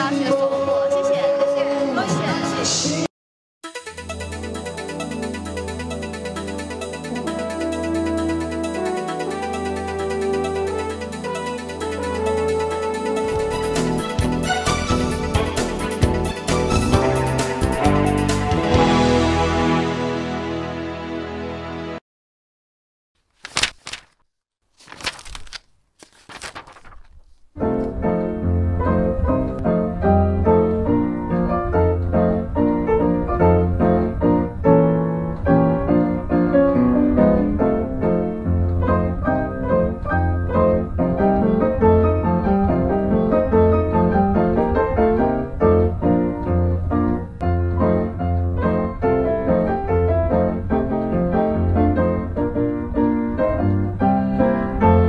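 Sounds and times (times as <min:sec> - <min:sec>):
piano music with low bass note: 0:27.6 - 0:55.0.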